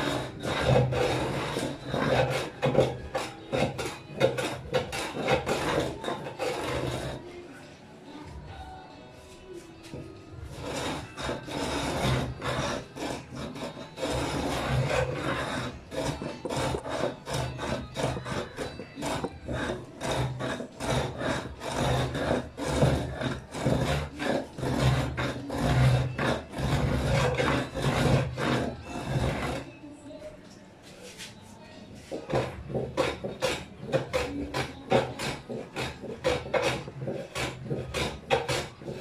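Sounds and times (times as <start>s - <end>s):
hand tool scraping wood: 0.0s - 7.3s, 9.6s - 29.8s, 31.0s - 39.0s.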